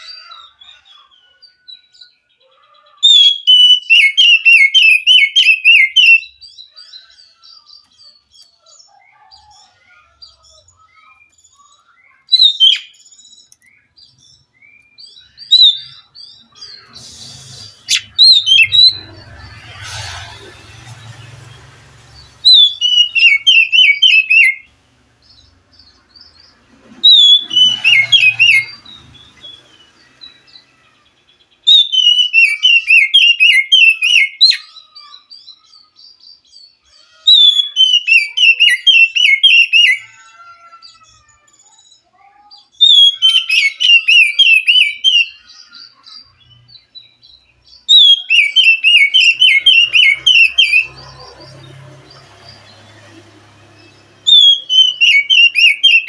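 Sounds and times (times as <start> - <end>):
bird singing whistled phrases: 3.1 - 6.4, 22.5 - 24.7, 31.6 - 34.7, 37.3 - 40.1, 42.8 - 46.0, 54.3 - 56.0.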